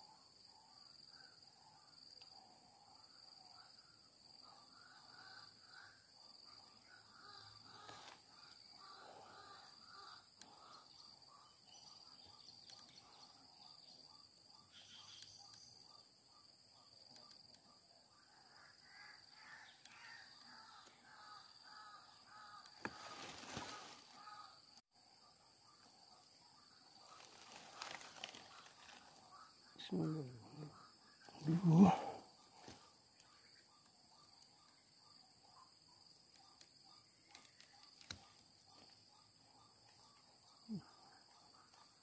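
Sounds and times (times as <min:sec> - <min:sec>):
high insect buzz: 0:07.1 - 0:15.9, 0:19.6 - 0:24.7, 0:26.9 - 0:34.4.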